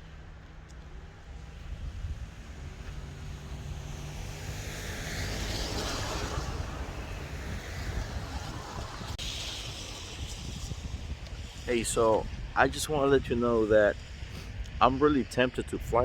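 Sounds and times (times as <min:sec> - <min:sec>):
car engine and road hum: 0:00.0 - 0:10.6.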